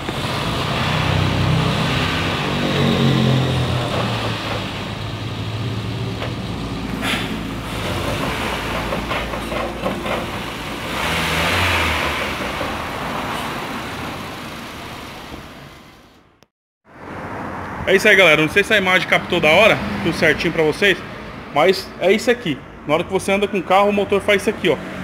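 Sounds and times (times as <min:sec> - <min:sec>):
car engine running: 0:00.0 - 0:16.2
sharp engine knocks: 0:03.6 - 0:13.7.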